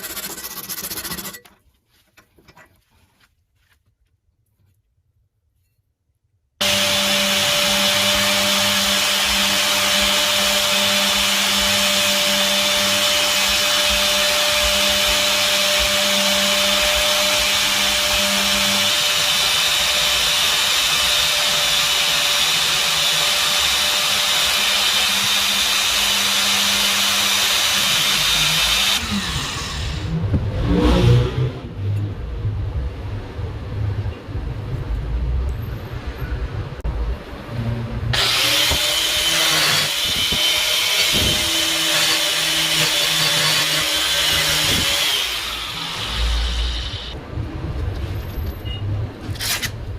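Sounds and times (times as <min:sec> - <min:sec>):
electric power tool humming: 0:06.6 - 0:30.0, 0:38.2 - 0:47.2.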